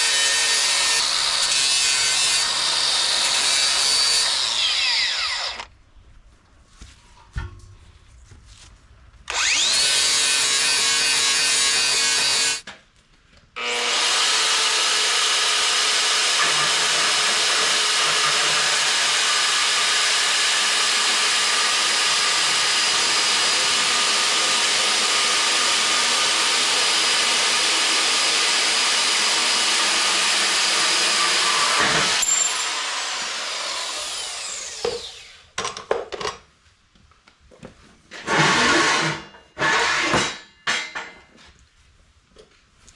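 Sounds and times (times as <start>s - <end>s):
angle grinder grinding metal: 0.0s - 5.7s, 9.3s - 12.6s, 13.6s - 35.4s, 38.2s - 40.4s.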